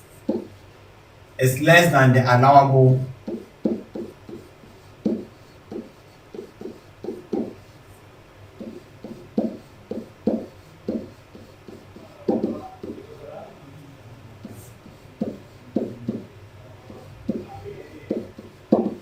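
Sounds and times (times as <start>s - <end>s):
pen writing on paper: 0.2s - 0.5s, 3.2s - 7.8s, 8.6s - 13.2s, 14.4s - 16.3s, 16.9s - 19.0s.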